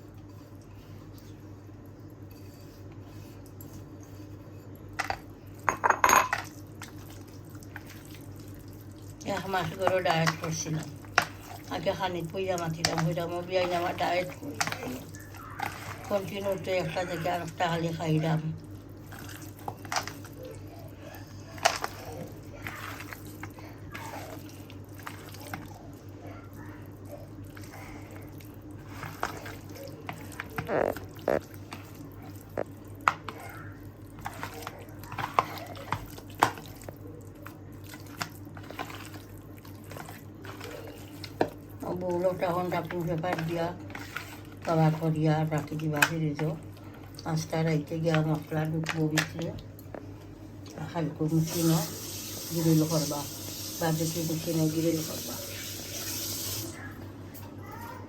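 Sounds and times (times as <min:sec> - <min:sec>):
dishes and utensils clinking: 0:05.0 - 0:06.5
wet squishing of chicken: 0:06.6 - 0:09.3, 0:14.4 - 0:17.3, 0:18.6 - 0:41.9.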